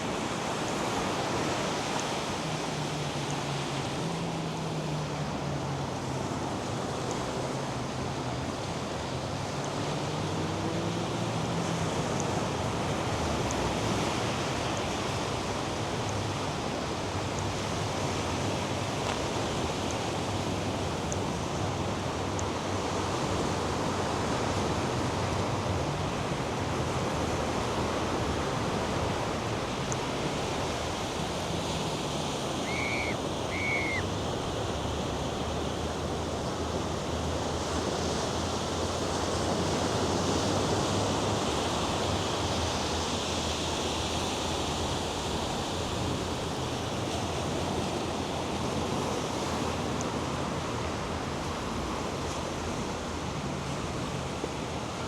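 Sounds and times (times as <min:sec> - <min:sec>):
surf washing onto beach: 0:00.0 - 0:55.0
short high chirps: 0:32.6 - 0:34.0.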